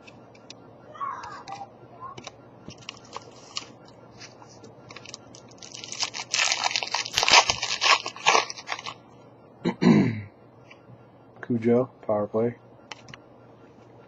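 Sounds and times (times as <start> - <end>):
foil wrapper tearing and crinkling: 5.0 - 9.0.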